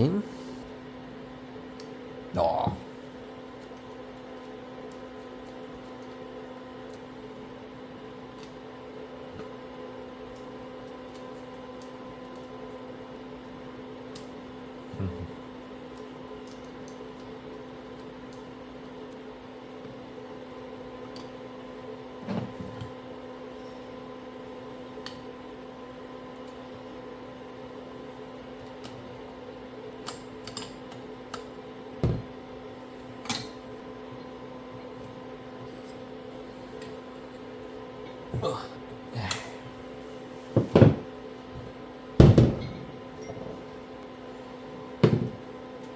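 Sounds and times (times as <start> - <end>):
steady electrical hum: 0.0 - 22.2.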